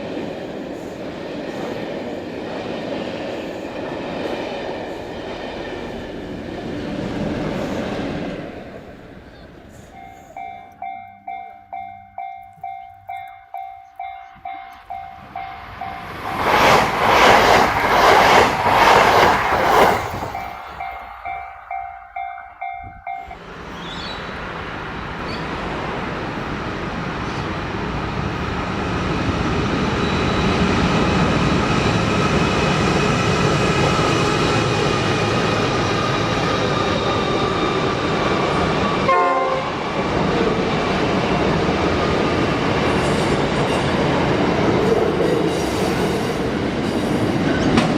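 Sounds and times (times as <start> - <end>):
approaching train rumble: 0.0 - 47.9
level-crossing bell ringing: 9.8 - 16.2, 20.2 - 23.4
train wheel clatter: 12.2 - 24.1, 39.8 - 47.9.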